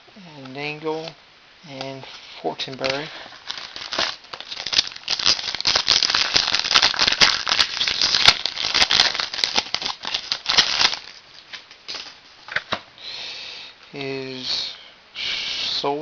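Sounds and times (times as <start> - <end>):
wrapper crinkling and tearing: 2.6 - 12.2.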